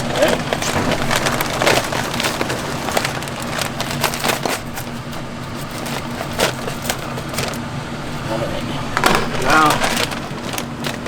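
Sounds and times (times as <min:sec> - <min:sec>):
bag crinkling: 0:00.0 - 0:11.0
steady low hum: 0:00.0 - 0:11.0.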